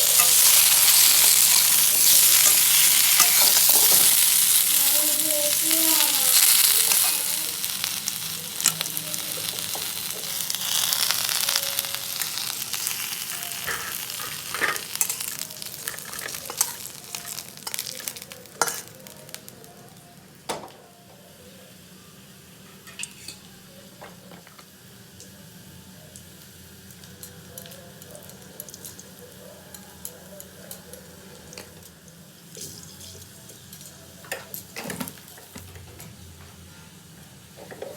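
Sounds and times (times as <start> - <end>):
spatula clicking and scraping pan: 0.0 - 4.7, 6.3 - 7.4, 13.2 - 19.0
food sizzling in a pan: 0.0 - 20.4, 21.0 - 37.9.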